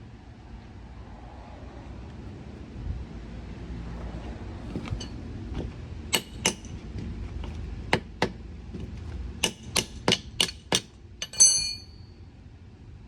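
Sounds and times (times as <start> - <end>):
hammer striking: 6.1 - 6.8, 9.4 - 12.0.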